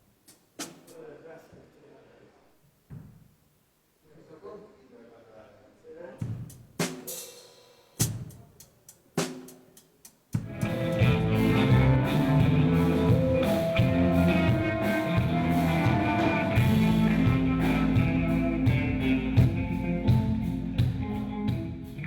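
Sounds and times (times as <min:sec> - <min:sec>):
rock band playing: 0:10.4 - 0:22.0.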